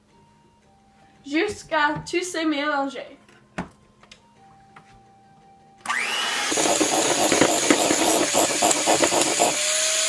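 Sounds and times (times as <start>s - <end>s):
electric mixer whining: 5.9s - 10.0s.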